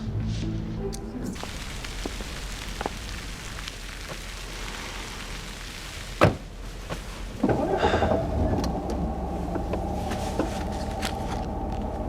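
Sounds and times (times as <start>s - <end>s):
rain falling: 1.3s - 12.0s
water dripping: 1.4s - 7.2s.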